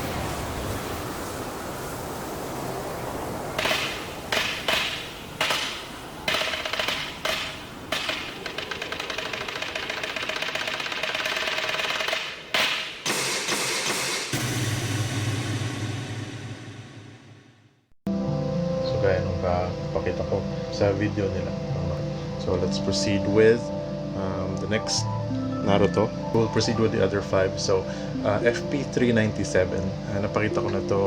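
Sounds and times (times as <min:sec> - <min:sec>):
steady hiss: 0:00.0 - 0:09.1.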